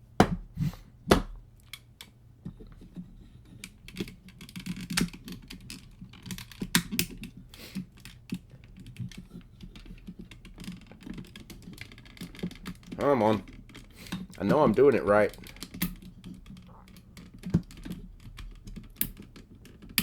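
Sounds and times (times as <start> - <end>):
plastic toy parts clicking: 1.6 - 2.2, 3.6 - 20.0.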